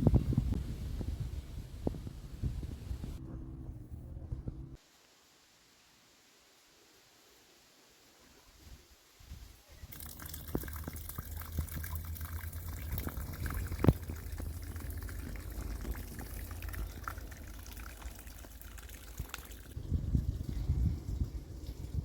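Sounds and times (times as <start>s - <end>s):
water pouring and splashing: 9.8s - 22.0s
small drips and clicks: 9.9s - 19.8s.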